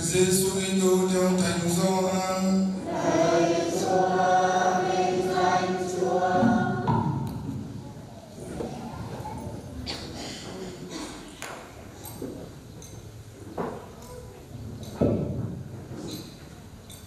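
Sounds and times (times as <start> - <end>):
church choir singing in harmony: 0.0 - 7.7.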